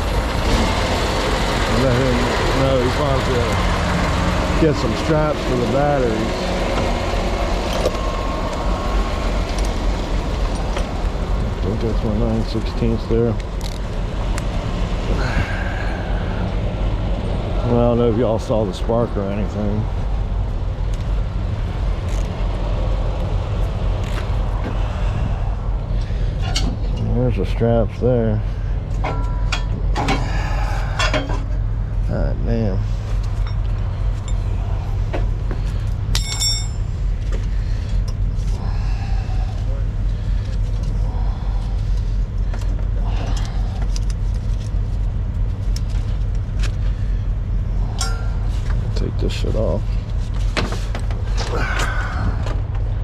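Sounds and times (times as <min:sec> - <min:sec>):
truck engine idling: 0:00.0 - 0:53.0.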